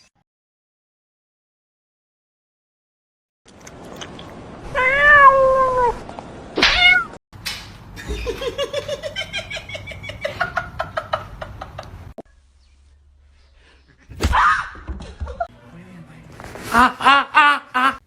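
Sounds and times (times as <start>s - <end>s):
cat meowing: 4.7s - 6.0s, 6.6s - 7.2s.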